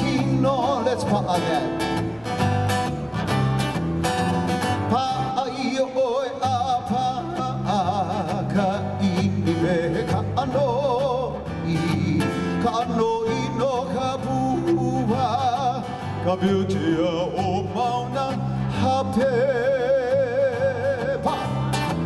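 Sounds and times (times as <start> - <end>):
person singing with vibrato: 0.0 - 2.2, 4.8 - 22.0.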